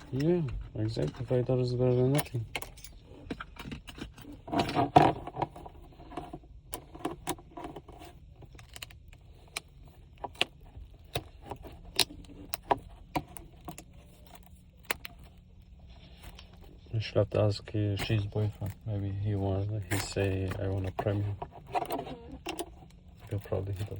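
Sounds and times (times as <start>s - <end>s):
low steady hum: 0.0s - 23.9s.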